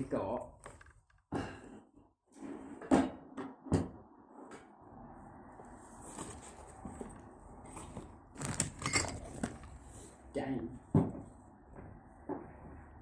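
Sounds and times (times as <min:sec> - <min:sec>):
soft rustling and handling: 0:05.7 - 0:10.3.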